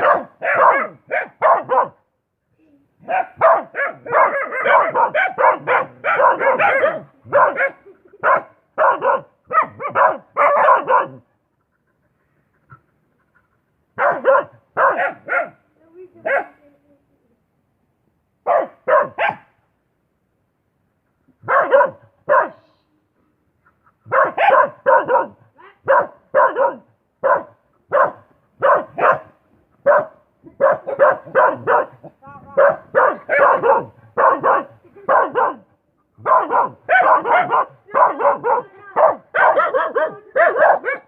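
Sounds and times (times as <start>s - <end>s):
dog barking: 0.0s - 2.0s, 3.0s - 11.3s, 14.0s - 15.6s, 16.2s - 16.6s, 18.4s - 19.6s, 21.4s - 22.6s, 24.1s - 41.0s.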